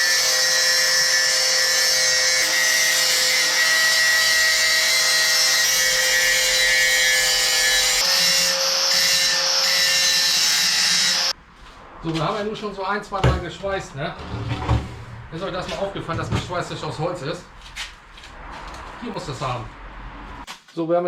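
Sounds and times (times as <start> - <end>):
angle grinder on metal: 0.0 - 11.4.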